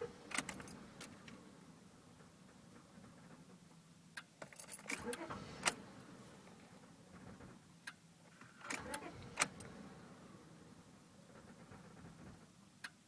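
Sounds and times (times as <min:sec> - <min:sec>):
car engine idling: 0:00.0 - 0:12.8.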